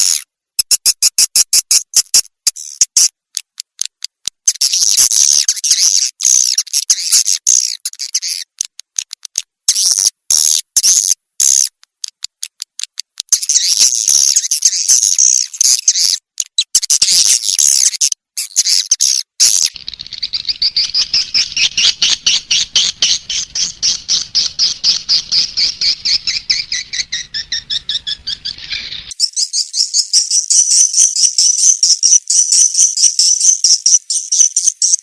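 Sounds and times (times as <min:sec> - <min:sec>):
rapid clicking twitters: 0:00.6 - 0:35.0
swiftlet high twittering chirps: 0:19.4 - 0:35.0.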